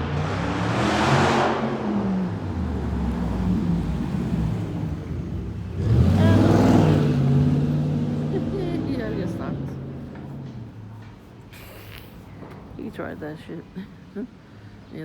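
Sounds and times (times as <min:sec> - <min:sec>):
car passing close by: 0:00.0 - 0:10.7
low rumble of vehicle engines: 0:00.0 - 0:15.0.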